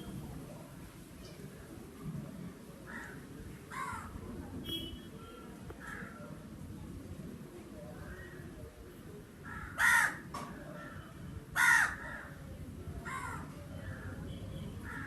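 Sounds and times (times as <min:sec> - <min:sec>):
low background noise: 0:00.0 - 0:15.0
crow cawing: 0:09.4 - 0:10.3, 0:11.6 - 0:12.3.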